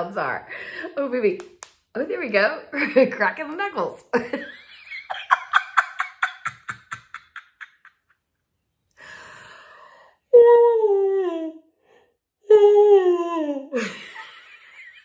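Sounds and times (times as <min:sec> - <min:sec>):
man laughing: 0:04.7 - 0:08.2
breathy in-breath: 0:08.9 - 0:10.3.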